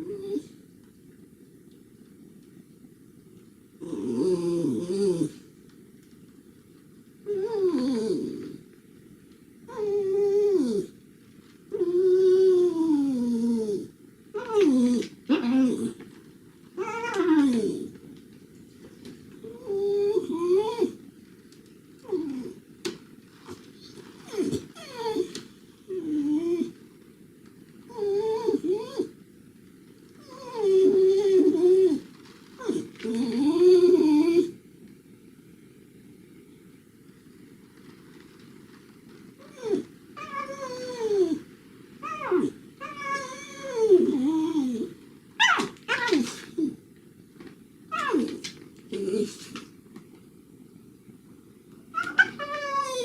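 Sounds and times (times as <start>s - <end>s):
dog whining: 0.0s - 0.6s, 3.8s - 5.4s, 7.2s - 8.6s, 9.7s - 11.0s, 11.7s - 16.0s, 16.8s - 18.0s, 19.4s - 21.0s, 22.0s - 22.6s, 23.8s - 26.8s, 27.9s - 29.2s, 30.2s - 34.6s, 39.4s - 46.8s, 47.9s - 49.7s, 52.0s - 53.0s.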